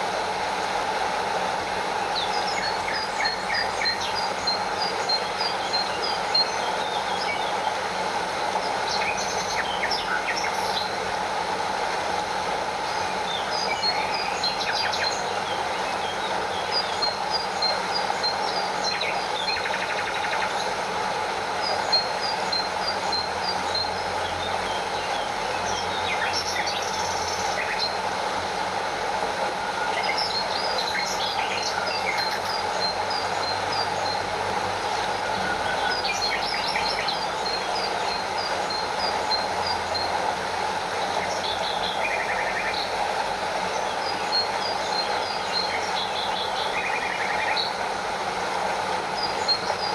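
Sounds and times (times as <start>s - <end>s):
stream over small waterfall: 0.0s - 49.9s
birds chirping: 29.9s - 47.8s.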